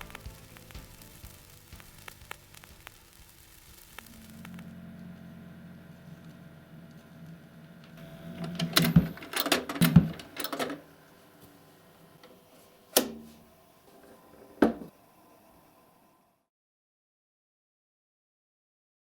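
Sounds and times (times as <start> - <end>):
faint hum: 0.0 - 16.5
record player mechanical clicks: 7.3 - 11.6, 12.2 - 14.9.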